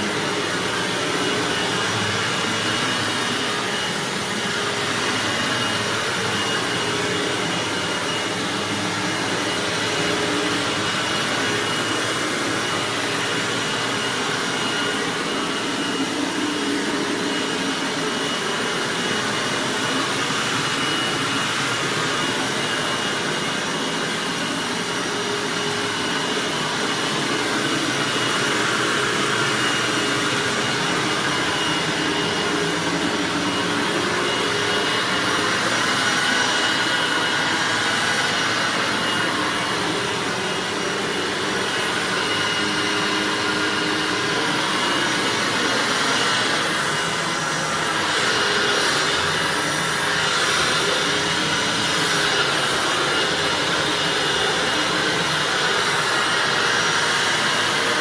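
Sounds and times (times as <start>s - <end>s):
upright vacuum cleaner running: 0.0s - 58.0s.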